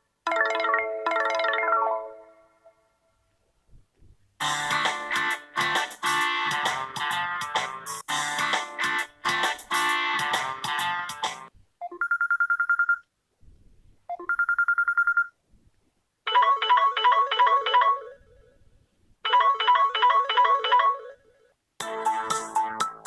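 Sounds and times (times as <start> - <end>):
musical ringtone: 0.3 - 2.9, 16.3 - 18.6, 19.3 - 23.0.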